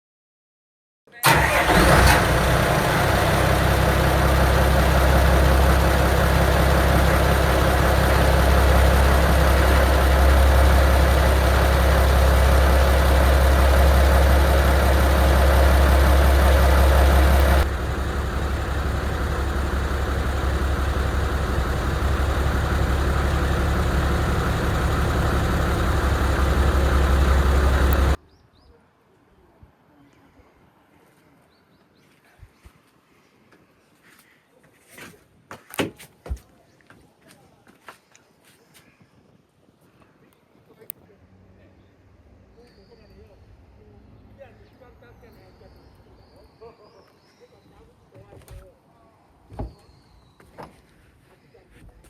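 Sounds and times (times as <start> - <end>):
boat engine idling: 1.3 - 28.2.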